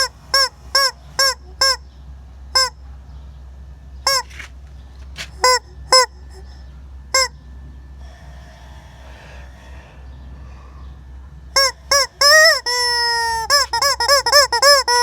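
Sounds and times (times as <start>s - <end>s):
rubber chicken toy squeaking: 0.0s - 1.8s, 2.6s - 2.8s, 4.1s - 4.5s, 5.3s - 6.4s, 11.6s - 15.0s.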